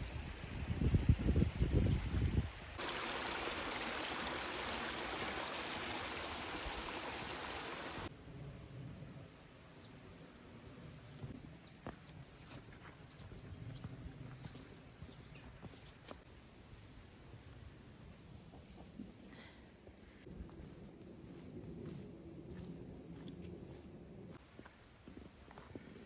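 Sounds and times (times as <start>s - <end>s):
flowing water rushing: 2.7s - 8.1s.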